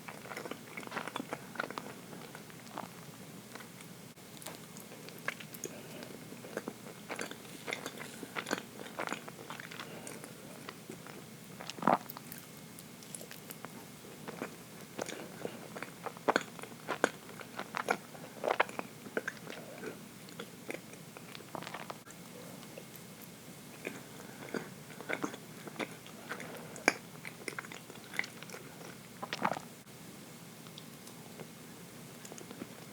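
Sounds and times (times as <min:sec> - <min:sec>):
chewing cake: 0:00.0 - 0:29.7, 0:30.6 - 0:32.9.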